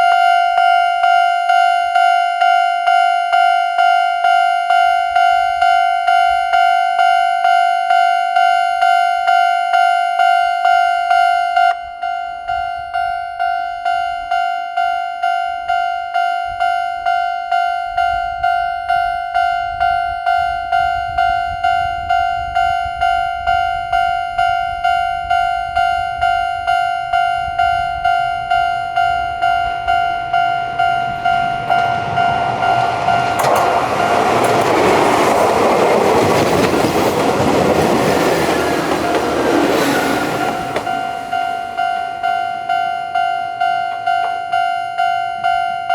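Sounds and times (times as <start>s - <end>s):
electronic crossing warning bell: 0.0s - 45.9s
train running past: 24.8s - 44.6s.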